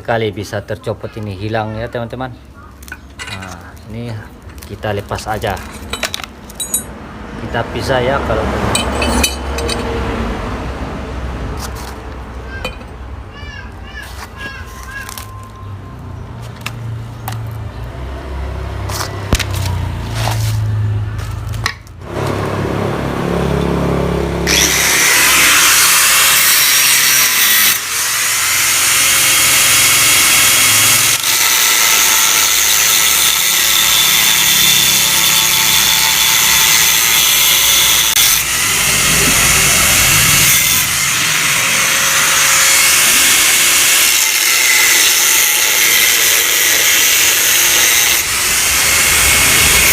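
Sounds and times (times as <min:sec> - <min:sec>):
power tool cutting steel: 0:08.0 - 0:10.1, 0:22.0 - 0:49.9
low hum: 0:38.2 - 0:43.3.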